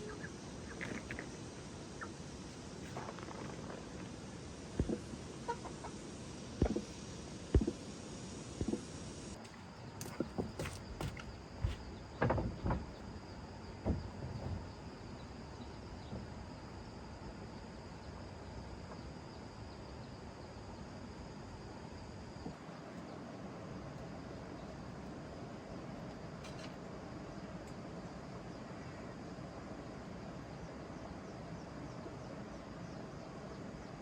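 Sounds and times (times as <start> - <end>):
insect chirring: 0.0 - 23.0.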